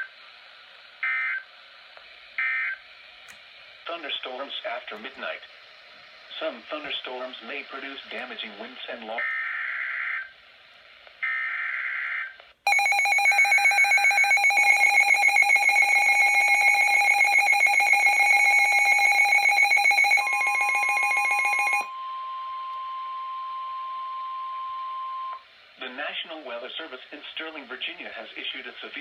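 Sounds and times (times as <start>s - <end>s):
rapidly pulsing electronic alarm: 11.2s - 22.4s
steady warning alert tone: 12.7s - 21.9s.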